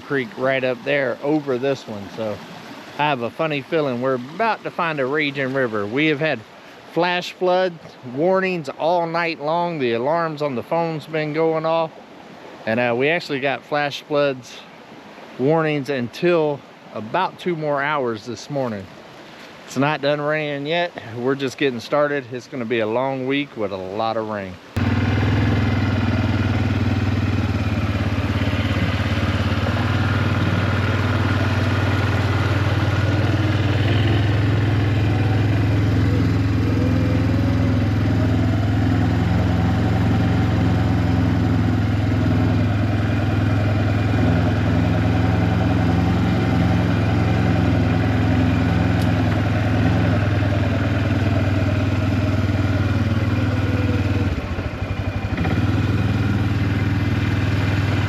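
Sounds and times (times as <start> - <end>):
small vehicle engine running: 24.8 - 58.0.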